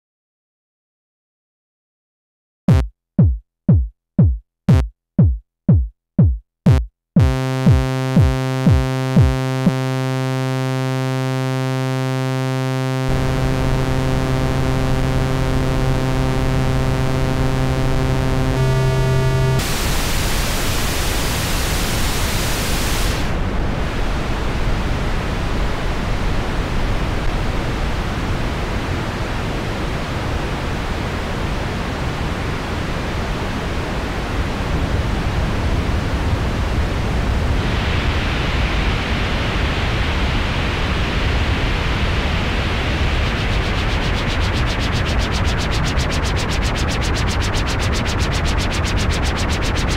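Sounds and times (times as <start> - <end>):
drum machine thump dropping in pitch: 2.7 - 9.4
steady buzzy synth tone: 6.7 - 23.4, 37.6 - 49.9
rushing noise hiss: 19.6 - 24.6, 37.4 - 49.9.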